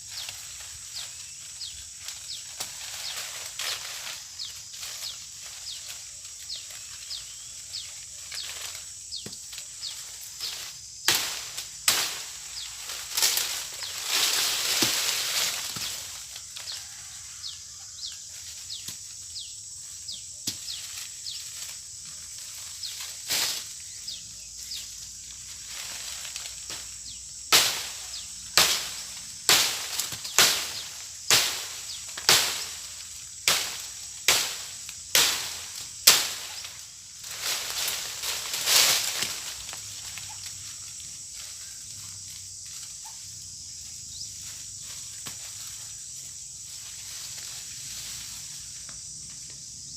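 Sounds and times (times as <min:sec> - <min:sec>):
sharp chopping strikes: 0:11.1 - 0:12.6, 0:27.5 - 0:32.8, 0:33.4 - 0:36.7.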